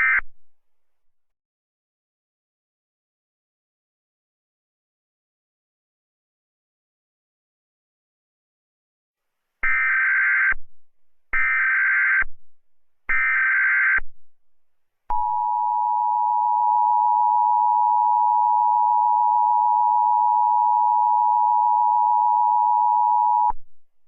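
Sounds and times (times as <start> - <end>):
data burst tones: 0.0 - 0.3.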